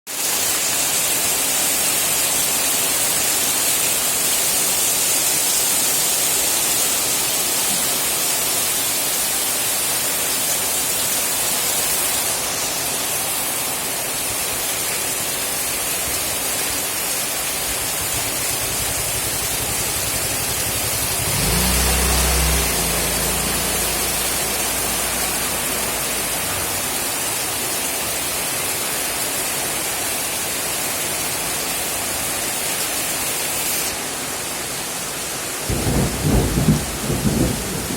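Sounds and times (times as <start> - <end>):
heavy rain hissing: 0.1 - 37.9
low rumble: 17.8 - 27.0.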